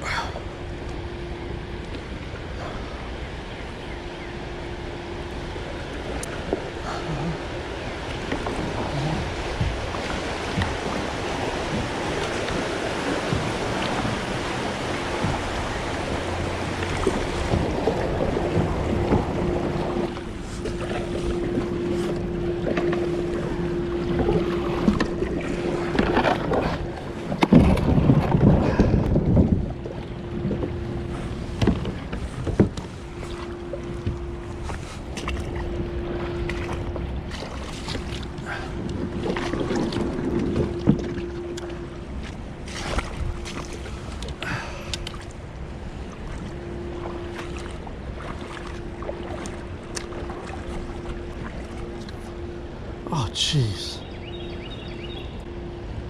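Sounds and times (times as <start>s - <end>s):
river water rushing and splashing: 5.4s - 29.0s, 34.6s - 53.8s
wind buffeting microphone: 5.4s - 33.2s.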